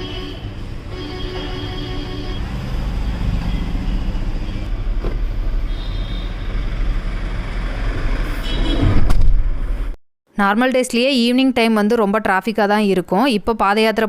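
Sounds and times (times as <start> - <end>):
road traffic rumble: 0.0 - 10.0.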